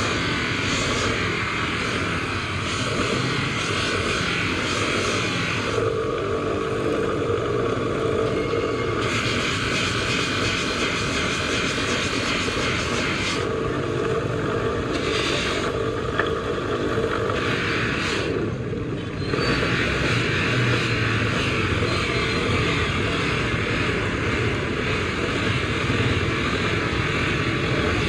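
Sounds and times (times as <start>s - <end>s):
hissing noise: 0.0s - 5.9s, 9.0s - 13.5s
motor running: 0.0s - 18.5s, 19.2s - 28.0s.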